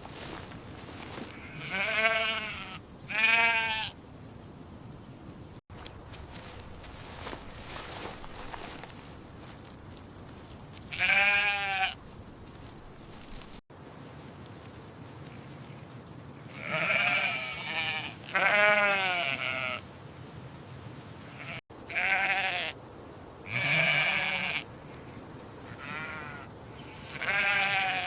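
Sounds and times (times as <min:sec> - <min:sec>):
sheep bleating: 0:01.3 - 0:04.0, 0:10.9 - 0:12.0, 0:16.5 - 0:19.8, 0:21.2 - 0:22.8, 0:23.4 - 0:24.7, 0:25.7 - 0:28.0.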